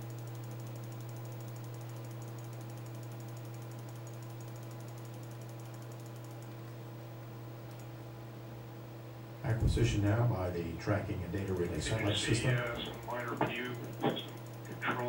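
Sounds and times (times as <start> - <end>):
faint rapid ticking: 0.0 - 6.6, 11.2 - 15.0
low electrical hum: 0.0 - 15.0.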